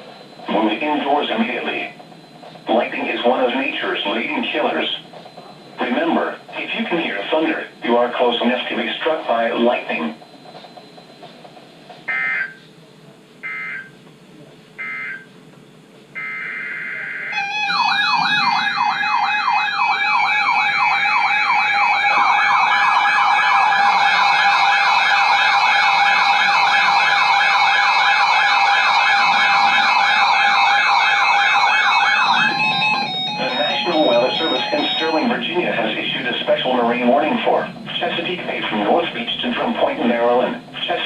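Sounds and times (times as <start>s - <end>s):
digital data tone bursts: 0.4s - 11.2s, 31.5s - 41.0s
warbling alert tone: 16.2s - 24.5s, 28.3s - 41.0s
steady low tone: 32.2s - 41.0s.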